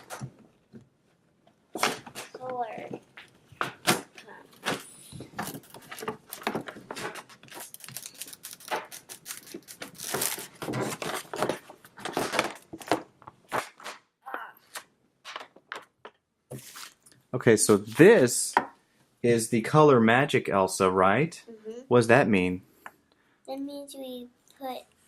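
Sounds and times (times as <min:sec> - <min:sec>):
crinkling cardboard and plastic: 0:01.8 - 0:14.1
packaging being torn open: 0:07.4 - 0:11.4.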